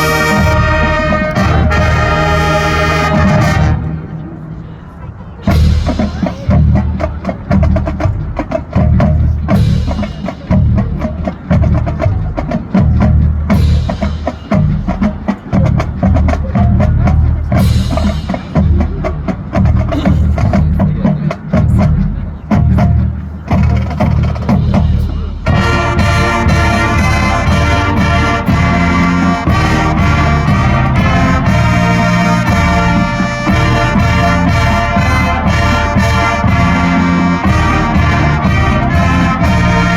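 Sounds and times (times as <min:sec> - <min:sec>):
brass section playing: 0:00.0 - 0:04.5, 0:25.4 - 0:39.9
marching band drums: 0:00.0 - 0:04.6, 0:05.4 - 0:39.9.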